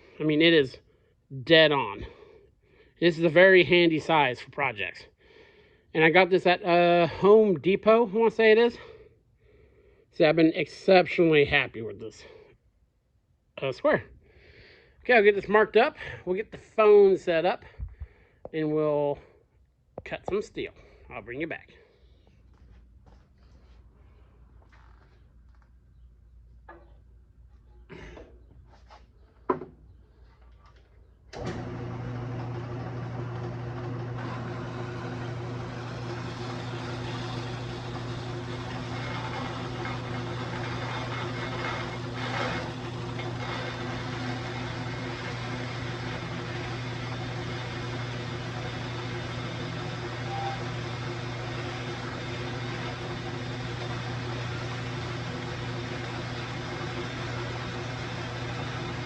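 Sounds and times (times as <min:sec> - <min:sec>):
electric saw cutting steel: 0:31.4 - 0:59.0.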